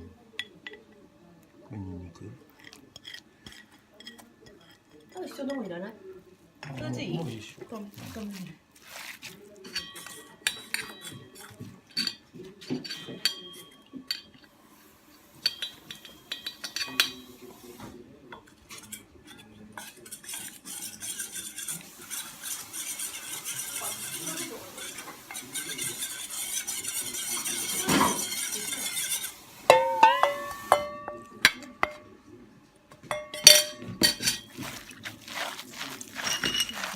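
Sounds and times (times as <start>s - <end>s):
stirring and mixing in a bowl: 0.0s - 36.9s
spoon clinking against bowls: 2.5s - 5.7s, 9.6s - 14.5s, 15.3s - 17.7s, 18.3s - 32.2s, 33.0s - 36.9s.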